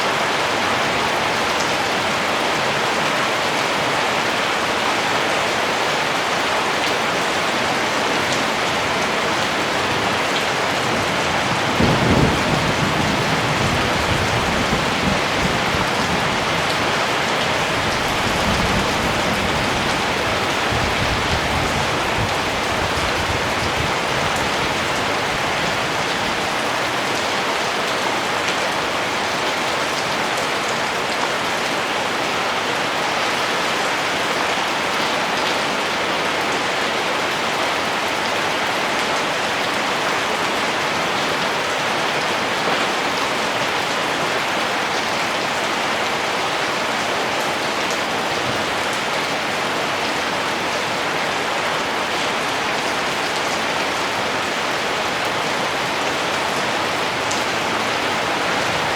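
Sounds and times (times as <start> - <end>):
steady rain: 0.0 - 58.9
thunder rumbling: 10.5 - 25.6.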